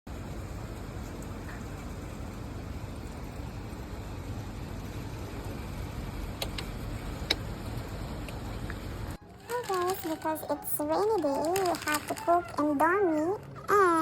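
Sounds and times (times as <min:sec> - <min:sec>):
steady rain: 0:00.1 - 0:09.2
sharp clicks: 0:06.4 - 0:07.4.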